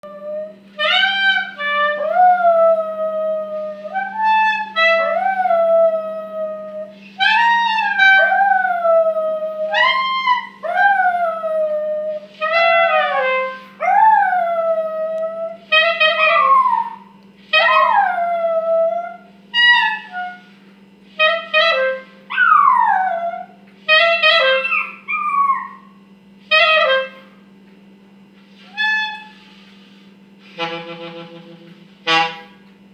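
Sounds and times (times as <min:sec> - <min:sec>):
clarinet: 0:00.0 - 0:27.4, 0:28.5 - 0:32.8
steady low hum: 0:00.0 - 0:32.9
dog howling: 0:00.1 - 0:20.4, 0:22.3 - 0:23.6, 0:24.4 - 0:26.0.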